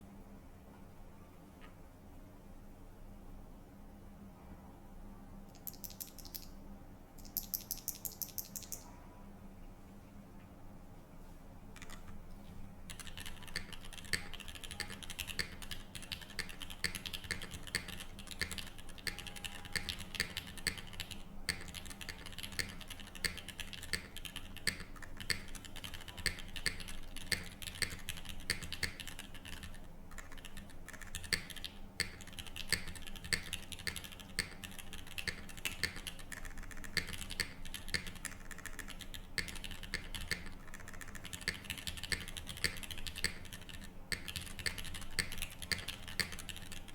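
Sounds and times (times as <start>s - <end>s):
mechanical keyboard typing: 5.5s - 6.6s, 7.2s - 8.9s, 12.9s - 46.9s.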